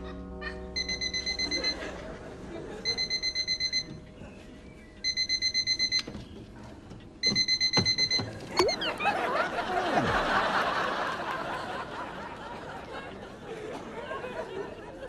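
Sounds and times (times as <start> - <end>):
alarm clock beeping: 0.8 - 1.9, 2.8 - 4.0, 5.0 - 6.1, 7.2 - 9.2.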